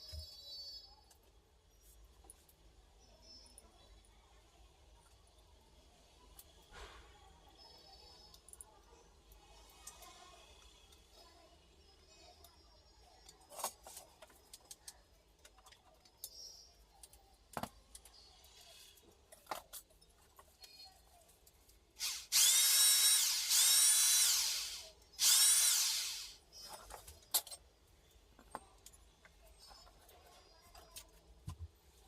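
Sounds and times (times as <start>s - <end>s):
electric drill whining: 22.0s - 26.4s.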